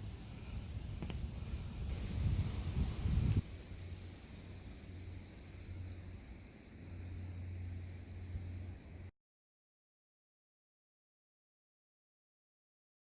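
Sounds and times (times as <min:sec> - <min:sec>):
insects chirping: 0:00.0 - 0:09.1
steady low rumble: 0:00.0 - 0:09.1.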